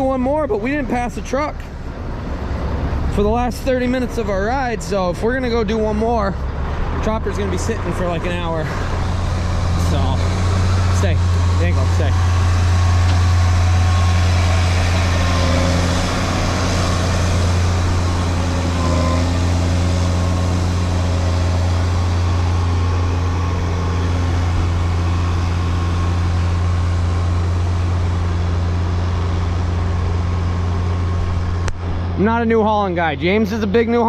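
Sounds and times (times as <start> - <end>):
diesel truck engine running: 0.0 - 34.0.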